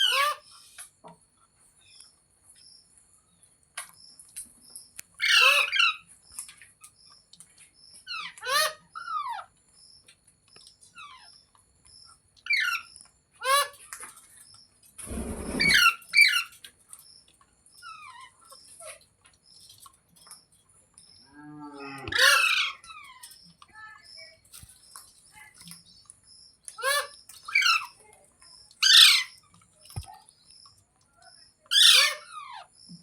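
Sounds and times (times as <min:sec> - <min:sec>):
parrot shrill calls: 0:28.8 - 0:29.3, 0:31.7 - 0:32.6.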